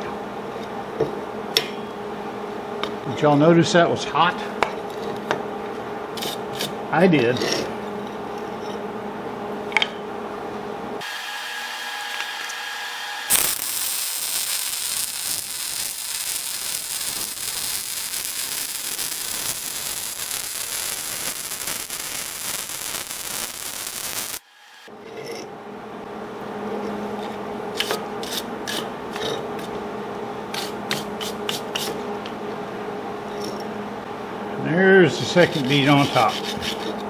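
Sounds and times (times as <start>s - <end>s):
workshop background sound: 4.3s - 33.8s, 34.4s - 37.0s
welder arc crackling hiss: 11.0s - 24.9s.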